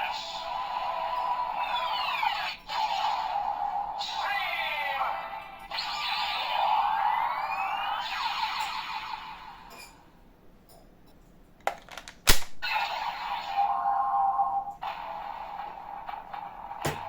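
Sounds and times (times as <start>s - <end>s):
toy belt electronic sound effects: 0.0s - 9.3s.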